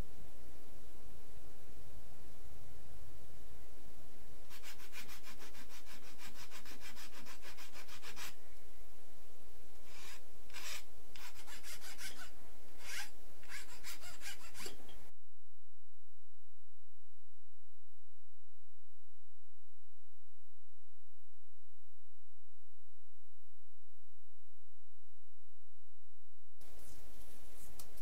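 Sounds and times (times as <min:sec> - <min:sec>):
hand tool rasping: 0:04.5 - 0:08.4, 0:09.9 - 0:15.0.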